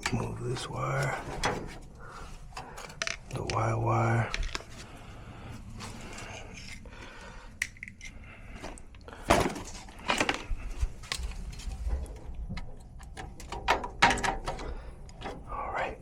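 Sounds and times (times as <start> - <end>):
clicks and knocks of handling: 0.0 - 4.9, 5.8 - 15.5
plastic and wire rustling: 4.2 - 15.5.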